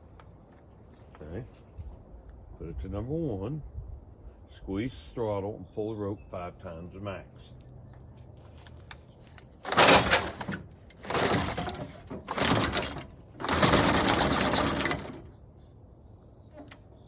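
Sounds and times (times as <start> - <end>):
recoil starter pulls cranking engine: 9.6 - 15.4.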